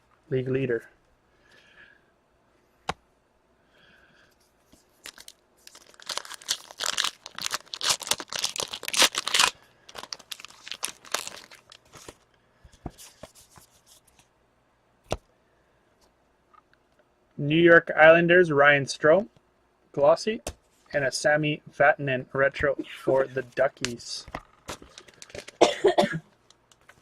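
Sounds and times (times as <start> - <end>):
wrapper tearing and crinkling: 5.0 - 12.2, 24.7 - 25.6.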